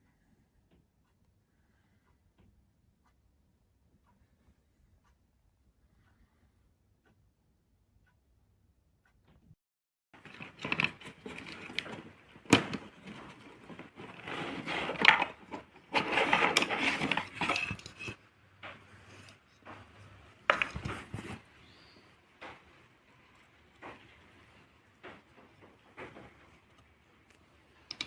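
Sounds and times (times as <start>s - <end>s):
objects knocking and clattering: 10.2s - 28.0s.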